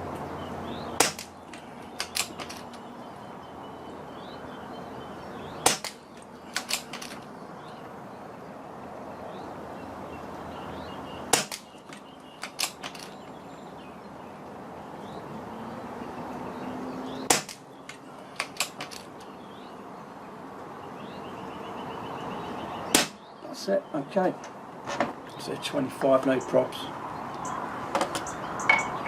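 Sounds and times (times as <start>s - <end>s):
air rifle shot crack: 1.0s - 1.4s, 5.6s - 6.0s
rifle action clicks: 2.0s - 2.8s, 5.7s - 7.2s.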